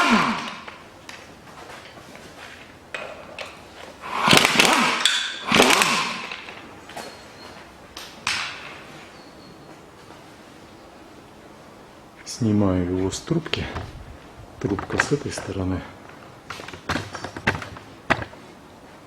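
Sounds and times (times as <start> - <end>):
power tool spinning bolts: 0.0 - 0.8, 3.0 - 6.7.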